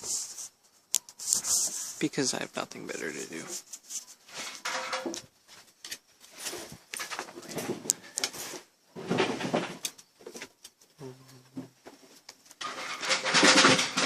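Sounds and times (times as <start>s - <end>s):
puppies rustling and scuffling: 3.2s - 11.0s
low animal vocal sound: 10.9s - 11.8s.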